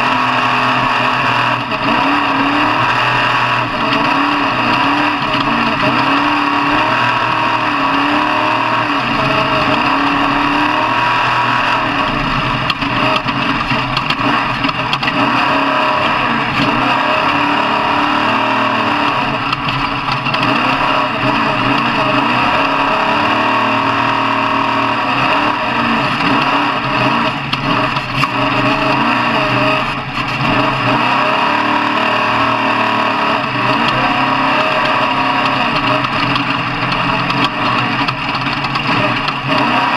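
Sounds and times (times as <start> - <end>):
truck engine revving: 0.0 - 39.9.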